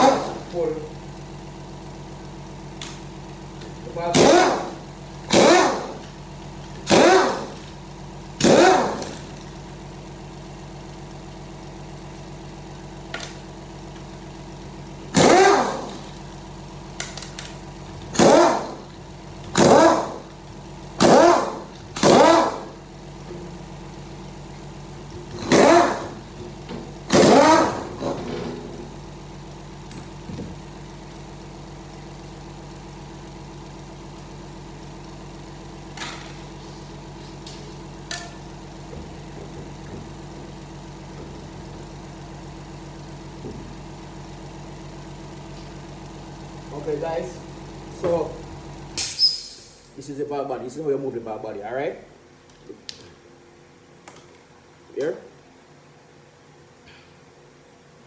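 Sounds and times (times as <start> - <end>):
power wrench whirring: 0.0 - 0.6, 2.8 - 7.8, 8.4 - 9.6, 15.1 - 16.2, 18.0 - 20.4, 21.0 - 22.8, 25.1 - 28.7.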